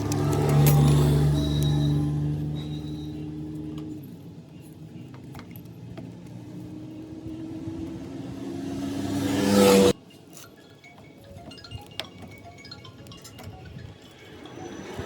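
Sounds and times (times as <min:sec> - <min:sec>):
motorcycle engine revving: 0:00.0 - 0:04.3, 0:05.0 - 0:10.0.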